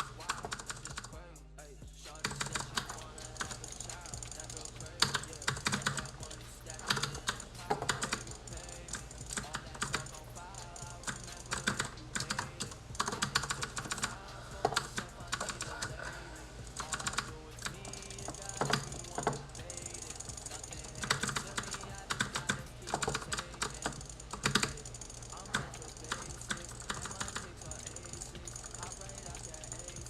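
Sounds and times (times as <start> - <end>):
faint music: 0.0 - 30.0.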